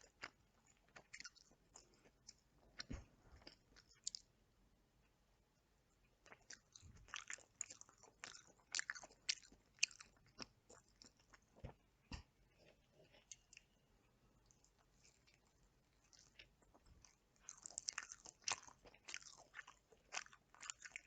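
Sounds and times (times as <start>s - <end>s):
chewing mouth sounds: 0.0s - 4.3s, 6.2s - 11.8s, 14.4s - 21.0s.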